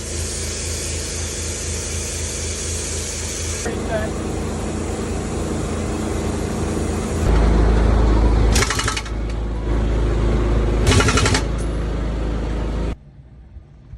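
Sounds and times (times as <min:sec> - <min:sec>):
engine rumbling: 0:00.0 - 0:13.9
pneumatic impact wrench hammering: 0:08.5 - 0:09.4, 0:10.8 - 0:11.8.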